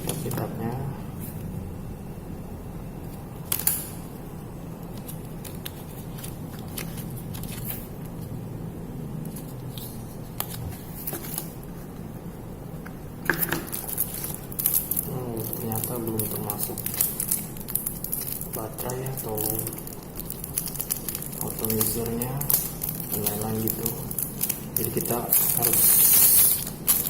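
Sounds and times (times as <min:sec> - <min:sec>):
steady low hum: 0:00.0 - 0:27.0
paper and packaging rustling: 0:05.0 - 0:08.1, 0:13.4 - 0:27.0.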